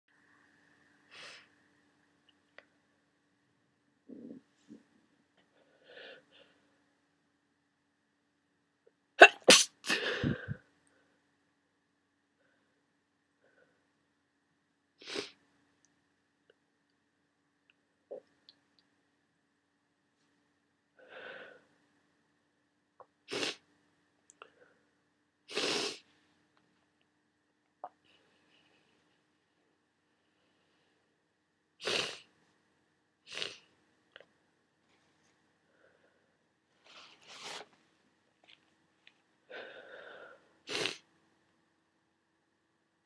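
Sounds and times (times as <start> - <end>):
person sneezing: 9.2 - 10.6
person sniffing: 9.2 - 10.6, 15.0 - 15.4, 25.5 - 26.0, 31.8 - 32.2, 33.3 - 33.6, 39.6 - 41.0
person breathing in: 9.9 - 10.6, 39.5 - 40.5.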